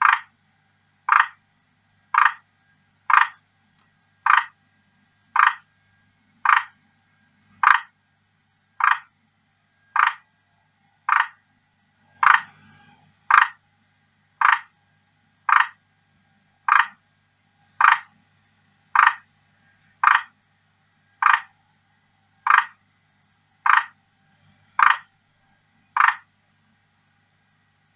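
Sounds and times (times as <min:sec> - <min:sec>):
tree frog croaking: 0:00.0 - 0:00.3, 0:01.1 - 0:01.4, 0:02.1 - 0:02.4, 0:03.1 - 0:03.4, 0:04.2 - 0:04.6, 0:05.4 - 0:05.7, 0:06.4 - 0:06.8, 0:07.6 - 0:07.9, 0:08.8 - 0:09.1, 0:09.9 - 0:10.3, 0:11.0 - 0:11.4, 0:12.2 - 0:12.5, 0:13.3 - 0:13.6, 0:14.4 - 0:14.7, 0:15.5 - 0:15.8, 0:16.6 - 0:17.0, 0:17.8 - 0:18.1, 0:18.9 - 0:19.2, 0:20.0 - 0:20.3, 0:21.2 - 0:21.5, 0:22.4 - 0:22.8, 0:23.6 - 0:24.0, 0:24.8 - 0:25.1, 0:26.0 - 0:26.3.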